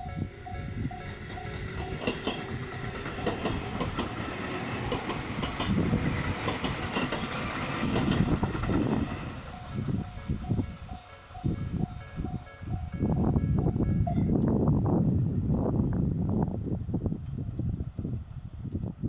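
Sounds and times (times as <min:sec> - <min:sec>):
crossing warning bells ringing: 0:00.0 - 0:14.4
train wheels clacking on rails: 0:00.3 - 0:12.5.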